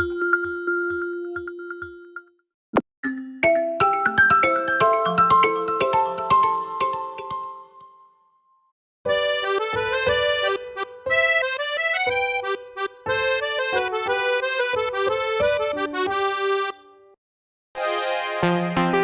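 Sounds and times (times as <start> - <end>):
phone ringtone melody: 0.0 - 2.2, 3.1 - 8.0.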